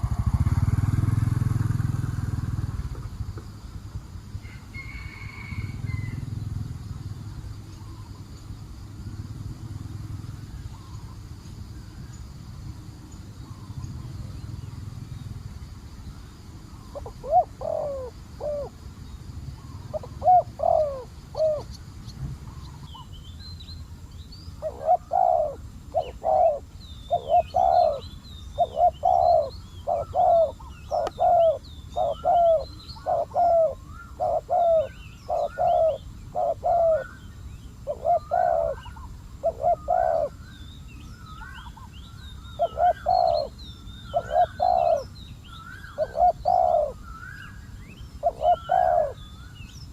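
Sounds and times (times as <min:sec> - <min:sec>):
small birds chirping: 0:00.0 - 0:49.9
doves cooing: 0:16.6 - 0:18.9, 0:19.5 - 0:21.8, 0:24.5 - 0:49.6.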